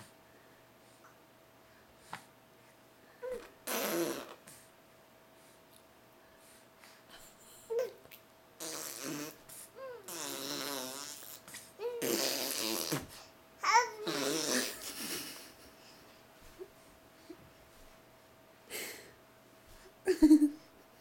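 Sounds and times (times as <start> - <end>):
baby blowing raspberries: 3.6 - 4.6, 8.6 - 13.3, 14.0 - 15.3.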